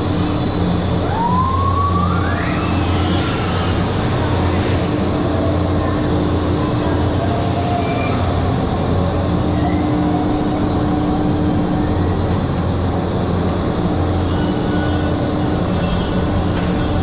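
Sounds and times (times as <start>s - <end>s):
mechanical drone: 0.0s - 17.0s.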